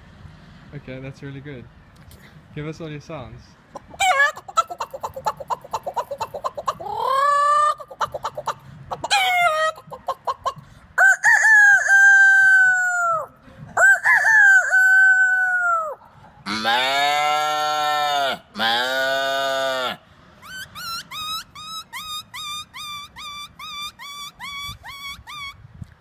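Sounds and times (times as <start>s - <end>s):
man imitating chicken clucks: 3.8s - 25.6s
man imitating rooster crows: 11.0s - 20.0s.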